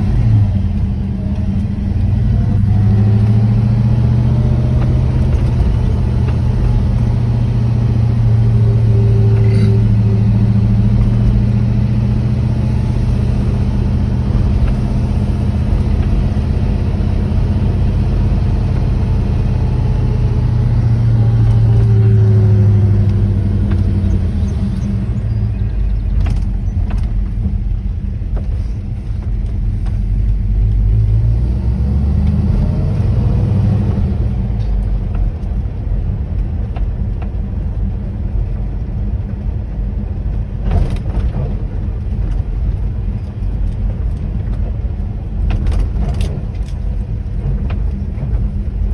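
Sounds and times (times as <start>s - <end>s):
car engine idling: 0.0s - 30.8s.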